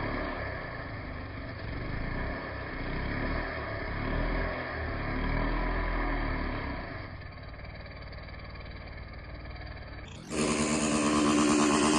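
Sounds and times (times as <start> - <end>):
engine running steadily: 4.6 - 11.9.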